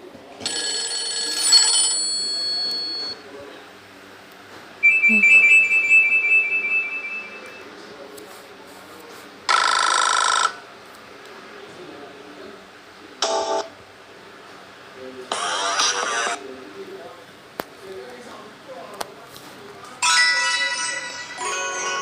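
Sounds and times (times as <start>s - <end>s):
phone ringing tone: 0.4s - 3.2s, 9.5s - 10.6s
quick high beeps: 4.8s - 7.7s.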